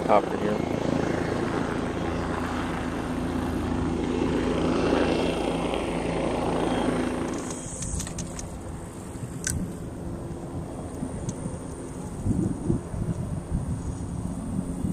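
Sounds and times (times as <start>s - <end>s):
helicopter flying low: 0.0s - 14.9s
sharp clicks: 7.3s - 8.6s, 9.4s - 9.6s.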